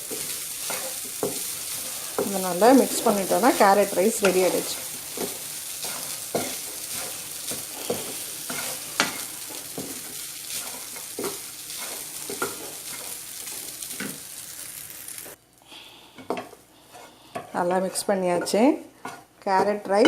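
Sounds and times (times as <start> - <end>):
rice sizzling in oil: 0.0 - 15.5
utensil scraping pan: 0.1 - 14.2, 16.9 - 20.0.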